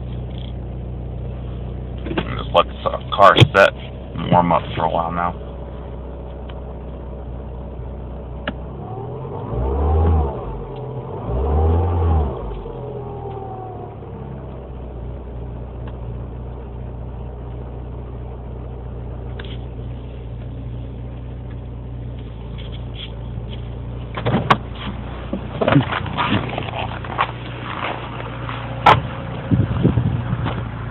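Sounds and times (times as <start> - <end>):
car engine idling and revving: 0.0 - 30.9.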